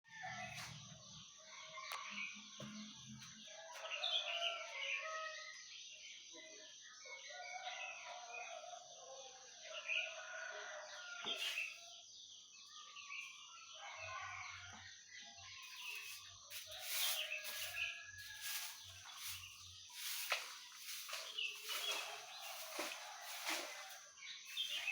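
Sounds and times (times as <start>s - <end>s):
rooster crowing: 3.6s - 5.3s, 15.7s - 24.9s
small birds chirping: 15.3s - 24.9s
chickens clucking: 15.7s - 24.9s.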